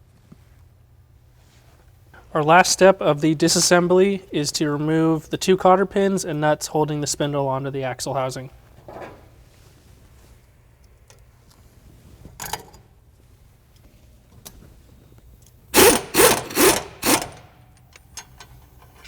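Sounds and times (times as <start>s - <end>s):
power wrench running: 15.8s - 17.8s.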